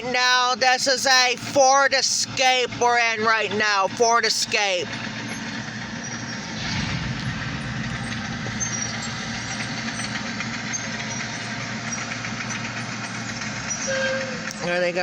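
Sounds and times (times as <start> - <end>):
diesel locomotive engine running: 0.0 - 15.0
train rolling past: 4.8 - 15.0.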